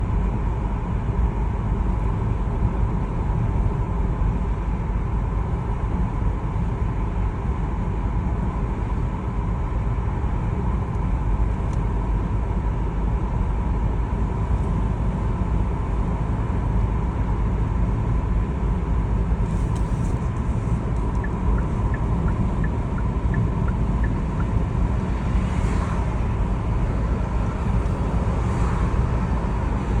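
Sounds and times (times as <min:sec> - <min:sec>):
car engine and tyre noise: 0:00.0 - 0:30.0.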